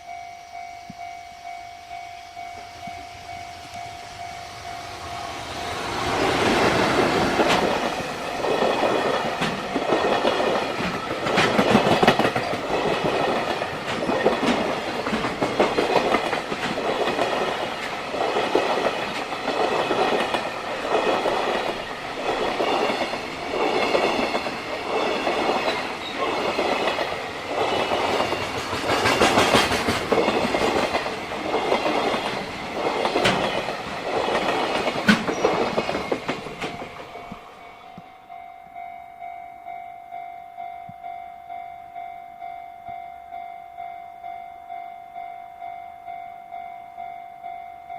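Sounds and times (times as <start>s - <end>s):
high wavering wheel ringing: 0.0s - 5.8s
train wheels clattering over rail joints: 5.8s - 37.4s.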